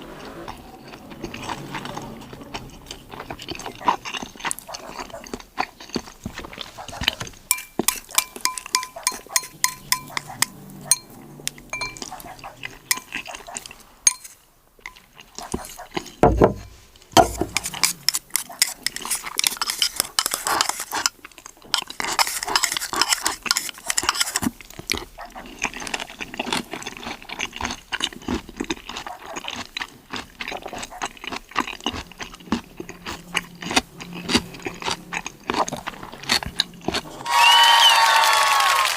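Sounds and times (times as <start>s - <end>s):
chewing: 0.0s - 37.3s
shells and utensils clicking: 7.5s - 11.0s
low thump: 16.2s - 17.6s.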